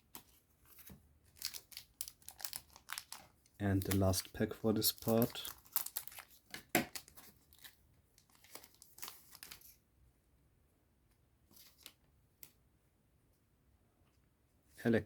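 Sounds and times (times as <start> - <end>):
foil pack tearing and crinkling: 1.3 - 9.6.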